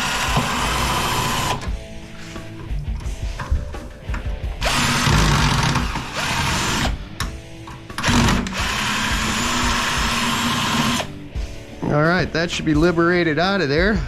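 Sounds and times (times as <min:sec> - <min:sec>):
power drill running: 0:00.0 - 0:01.7, 0:04.6 - 0:07.0, 0:08.0 - 0:11.1.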